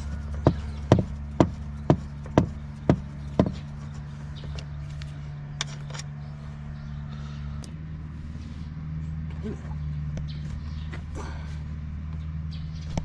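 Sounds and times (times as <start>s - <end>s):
steady low hum: 0.0s - 13.0s
sharp knocks: 0.4s - 3.7s.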